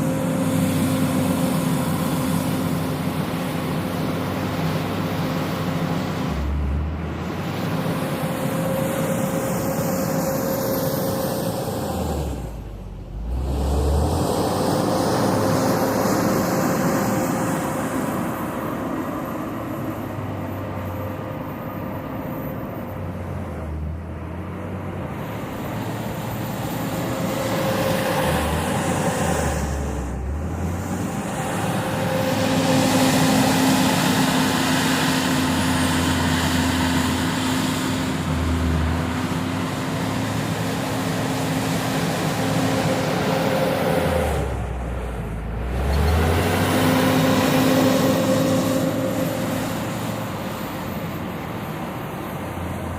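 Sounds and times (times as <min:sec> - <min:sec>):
steady whine: 0:00.0 - 0:13.4, 0:25.0 - 0:52.9
wheel loader diesel engine: 0:00.0 - 0:52.9.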